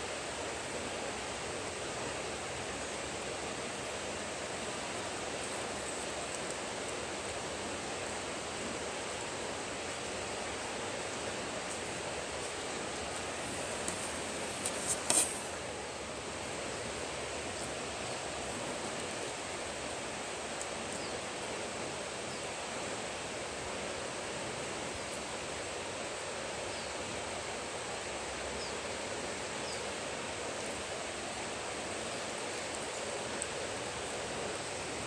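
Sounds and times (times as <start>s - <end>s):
steady background hiss: 0.0s - 35.0s.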